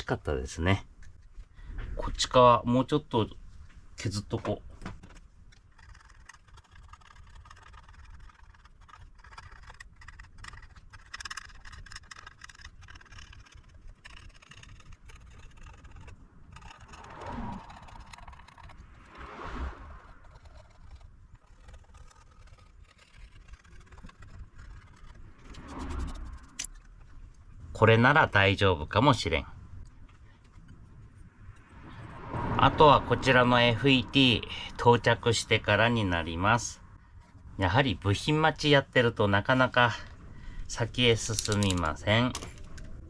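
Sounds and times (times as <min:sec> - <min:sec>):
hand tool scraping circuit board: 0:05.0 - 0:18.8, 0:20.2 - 0:26.9, 0:40.9 - 0:42.8.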